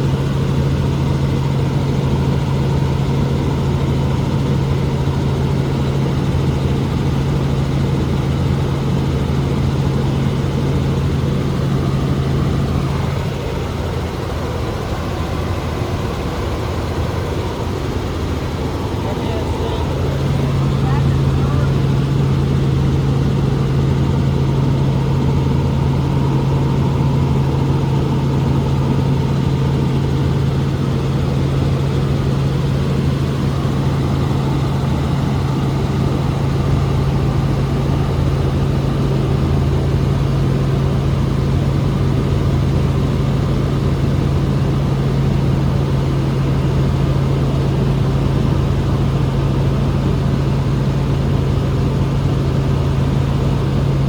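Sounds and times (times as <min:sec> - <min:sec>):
helicopter cabin drone: 0:00.0 - 0:54.0.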